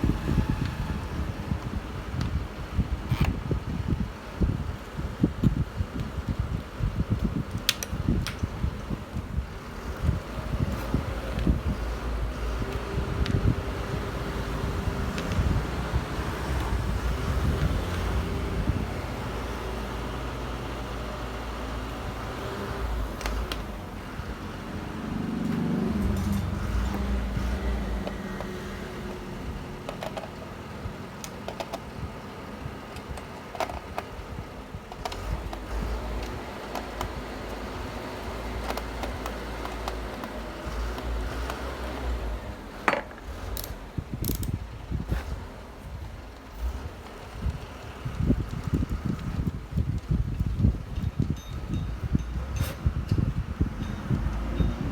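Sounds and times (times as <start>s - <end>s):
wind rumble on microphone: 0.0s - 54.9s
small tools clicking and rattling: 25.4s - 32.0s, 32.9s - 34.2s, 34.9s - 45.4s.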